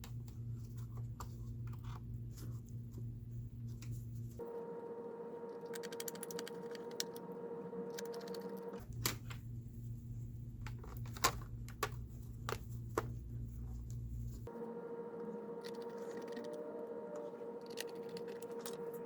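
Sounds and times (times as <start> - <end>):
steady hum: 0.0 - 19.0.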